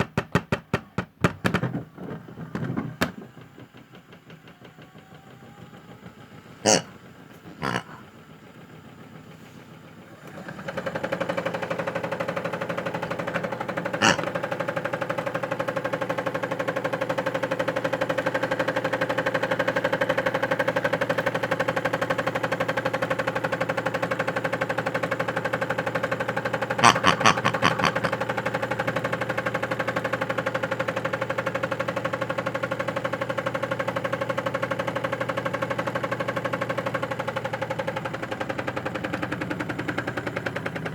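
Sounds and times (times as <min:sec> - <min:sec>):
small electric motor rattling: 0:10.1 - 0:40.9.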